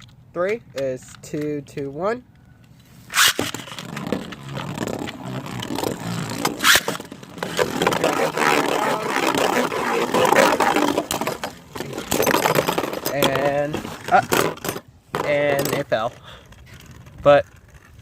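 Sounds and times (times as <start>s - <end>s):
spinning tops whirring and scraping: 3.0s - 13.2s.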